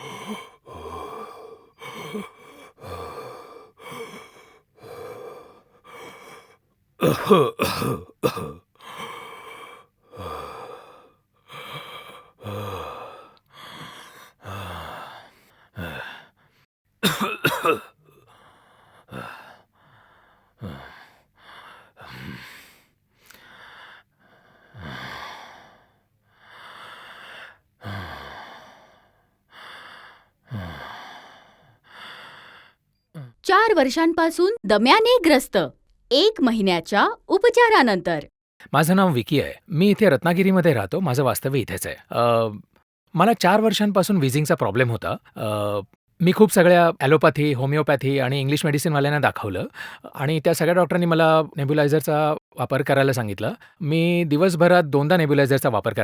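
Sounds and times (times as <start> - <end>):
wheezy laboured breathing: 0.0 - 6.7, 7.3 - 16.7, 17.9 - 33.4, 49.7 - 50.2
person coughing: 7.0 - 8.7, 17.0 - 18.2.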